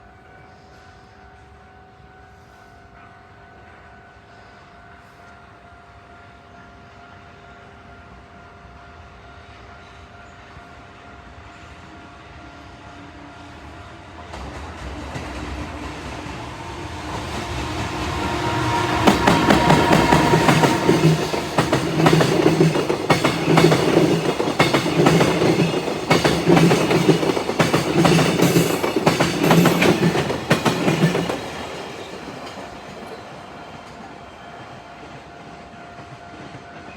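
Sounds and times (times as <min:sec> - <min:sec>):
train rumble: 0:12.0 - 0:36.9
wheels clacking over rail joints: 0:14.3 - 0:33.2.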